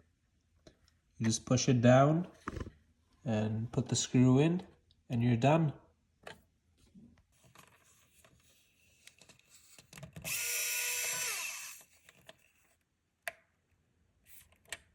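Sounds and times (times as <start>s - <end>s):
electric screwdriver motor whirring: 10.2s - 12.0s.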